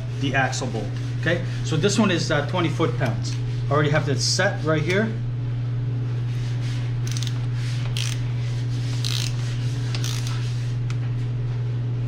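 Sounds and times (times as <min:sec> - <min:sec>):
steady low hum: 0:00.0 - 0:12.0
torque wrench ratcheting: 0:07.0 - 0:07.4, 0:08.0 - 0:08.2, 0:09.0 - 0:10.4.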